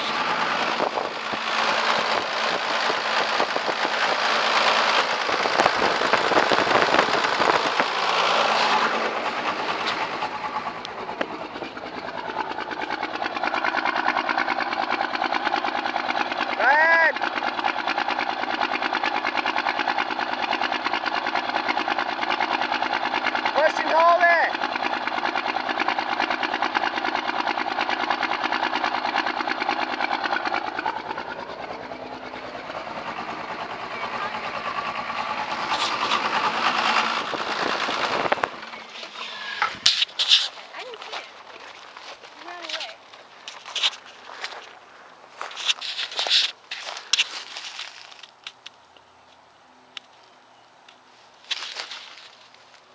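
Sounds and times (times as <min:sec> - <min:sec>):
diesel engine idling roughly: 0:00.0 - 0:48.2.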